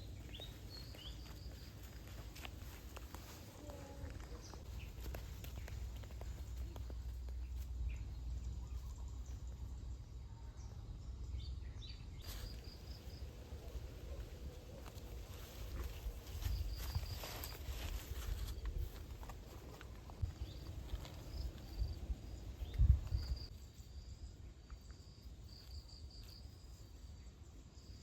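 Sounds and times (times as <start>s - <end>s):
bird chirping: 0.0s - 18.8s
small clicks and rustles: 0.3s - 7.9s
wind rumble on microphone: 20.1s - 23.5s.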